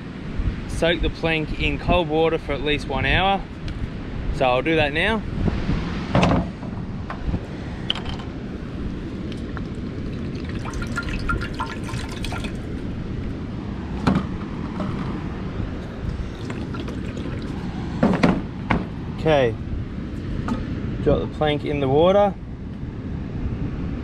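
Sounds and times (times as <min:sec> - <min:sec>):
water pouring into container: 0:09.4 - 0:12.9, 0:15.8 - 0:18.0.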